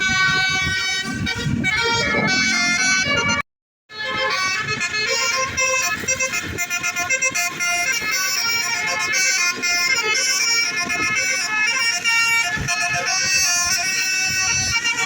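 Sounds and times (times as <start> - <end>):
multi-tone bus horn playing tune: 0.0 - 15.0.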